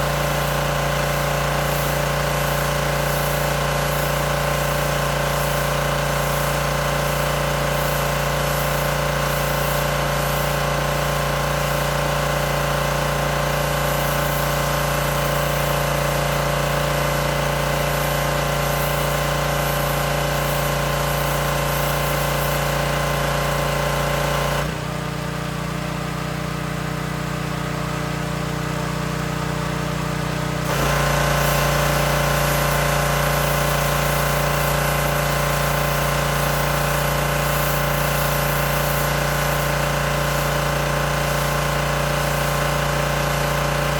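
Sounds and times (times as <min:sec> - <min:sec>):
high-pressure spray hiss: 0:00.0 - 0:24.3, 0:30.7 - 0:43.9
pressure washer engine running: 0:00.0 - 0:43.9.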